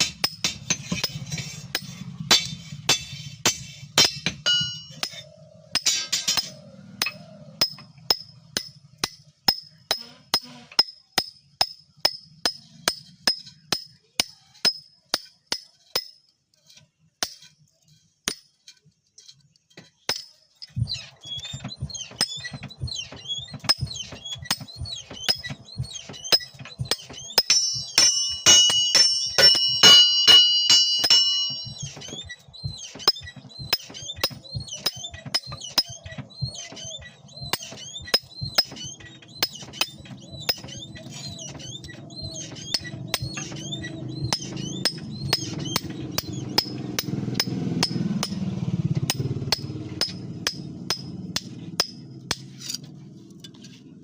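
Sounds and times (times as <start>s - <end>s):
hammer striking steel on anvil: 0.0s - 16.2s, 20.1s - 20.3s, 22.1s - 52.8s
wavering high ringing tones: 4.0s - 14.0s, 22.2s - 48.3s.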